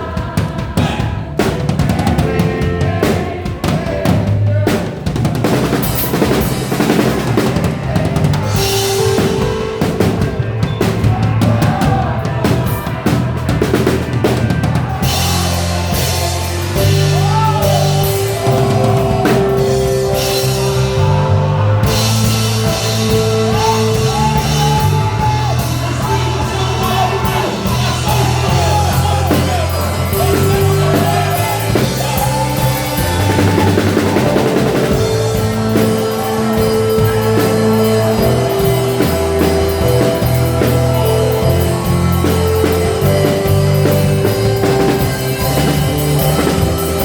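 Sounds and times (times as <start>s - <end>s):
church band music: 0.0s - 47.0s
drum kit: 0.0s - 47.0s
electric bass: 0.0s - 47.0s
cymbals: 5.6s - 47.0s
sustained chords: 12.0s - 47.0s.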